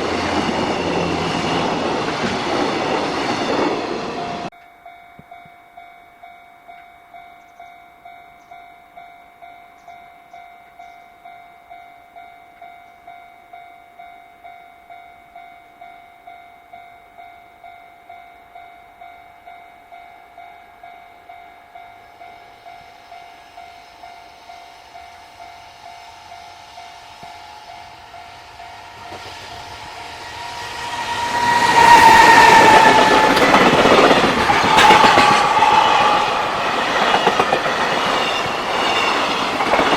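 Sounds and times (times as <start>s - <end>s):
train passing close: 0.0s - 4.5s, 19.9s - 39.9s.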